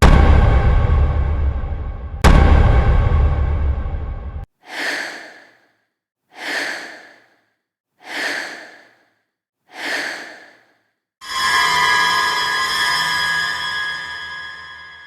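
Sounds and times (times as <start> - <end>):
spooky breathing: 4.6 - 10.8.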